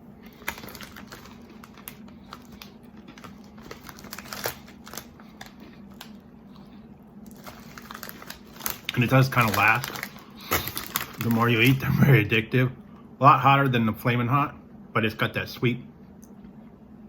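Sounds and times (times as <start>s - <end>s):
crunchy snacks being chewed: 0.2s - 11.9s
snack bag rustling: 0.2s - 12.0s.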